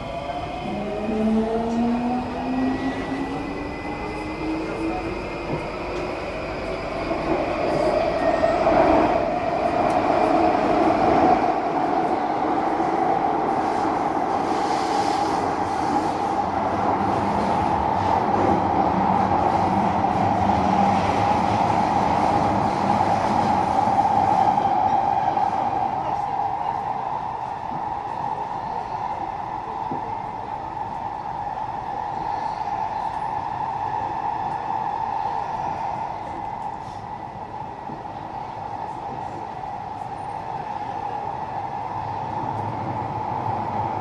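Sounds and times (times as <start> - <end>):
train rumble: 0.0 - 44.0.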